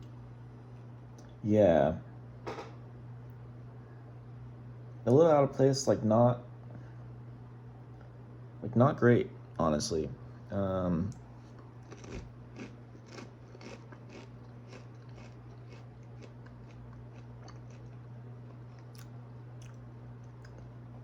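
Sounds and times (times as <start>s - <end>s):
steady low hum: 0.0s - 21.0s
rice crisps crunching: 11.8s - 19.7s.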